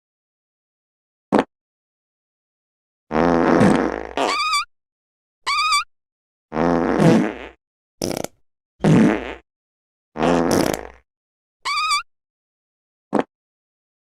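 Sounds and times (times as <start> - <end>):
fart sound effects: 3.1 - 4.6, 6.5 - 9.4, 10.2 - 11.0, 13.1 - 13.3.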